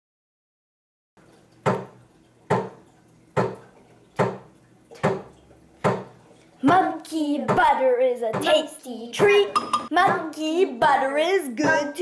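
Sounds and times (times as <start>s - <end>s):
sharp percussive hits: 9.2s - 10.3s.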